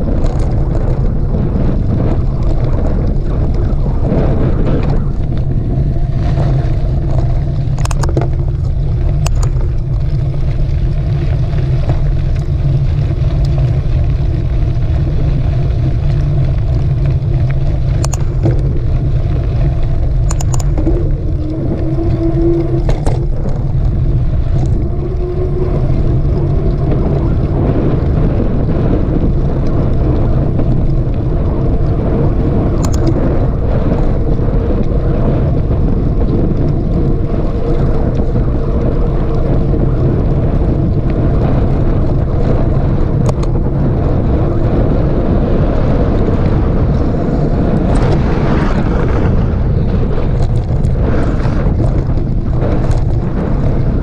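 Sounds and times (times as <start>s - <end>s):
mountain bike rumbling on dirt: 0.0s - 54.0s
wind over microphone: 0.0s - 54.0s
sharp ticks: 7.7s - 10.7s, 16.0s - 24.9s, 32.8s - 33.4s.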